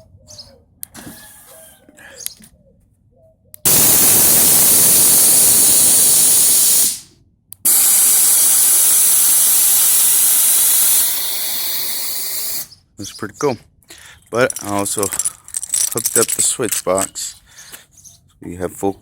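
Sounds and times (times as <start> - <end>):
valve click: 3.6 - 12.7
air suspension valves hissing: 3.6 - 12.8.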